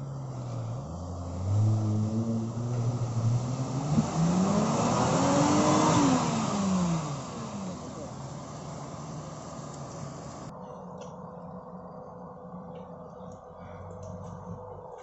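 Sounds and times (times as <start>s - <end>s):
vehicle engine revving: 0.0s - 10.5s.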